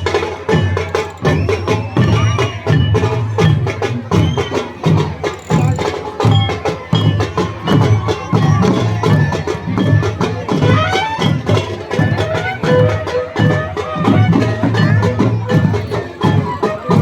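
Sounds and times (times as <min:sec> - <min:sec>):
drums beating steady rhythm: 0:00.0 - 0:17.0
wavering folk melody: 0:04.6 - 0:17.0.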